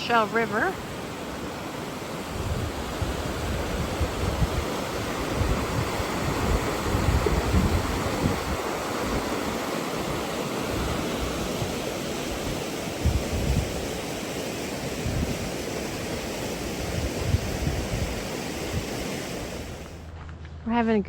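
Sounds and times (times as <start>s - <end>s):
river flowing: 0.0s - 20.1s
wind buffeting microphone: 0.0s - 20.1s.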